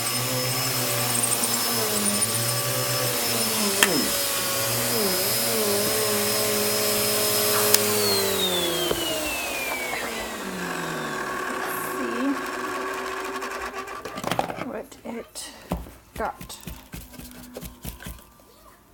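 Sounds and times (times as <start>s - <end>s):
vacuum cleaner running: 0.0s - 14.4s.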